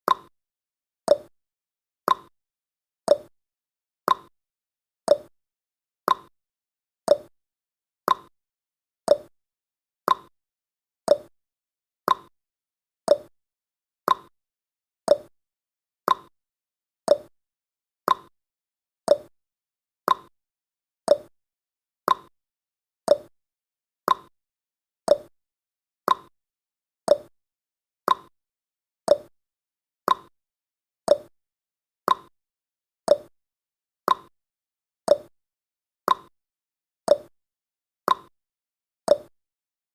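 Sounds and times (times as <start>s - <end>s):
clock ticking: 29.1s - 29.3s, 39.1s - 39.3s.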